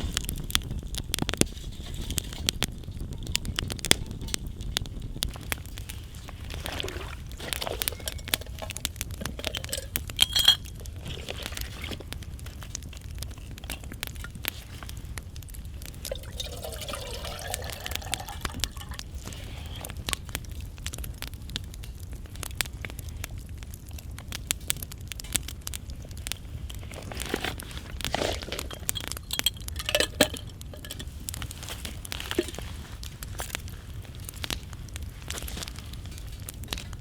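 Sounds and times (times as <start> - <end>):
low steady rumble: 0.0 - 37.0
wood fire crackling: 0.0 - 37.0
clinks: 7.4 - 10.8, 28.2 - 31.1.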